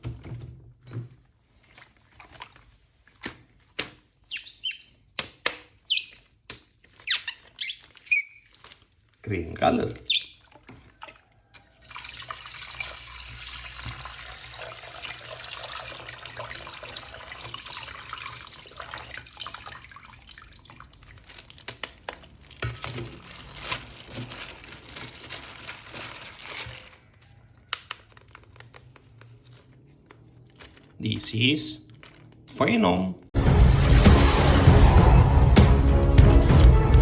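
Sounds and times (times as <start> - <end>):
plastic toy knocking and splashing: 10.3 - 20.9
water running from a tap: 11.8 - 21.2.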